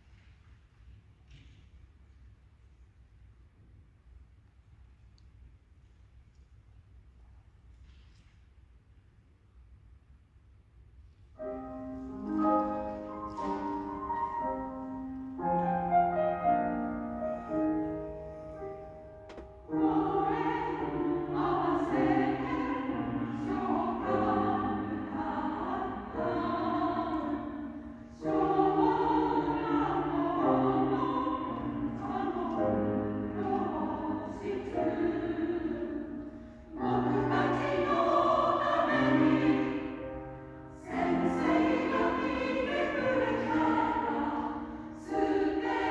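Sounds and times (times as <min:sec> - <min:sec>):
choir singing: 0:11.4 - 0:45.9
piano playing: 0:11.4 - 0:45.9.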